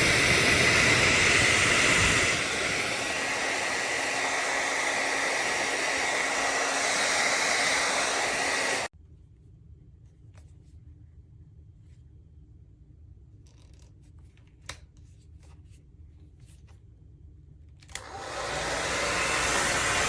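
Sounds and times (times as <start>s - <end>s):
hair dryer running: 0.0s - 8.9s, 17.9s - 20.0s.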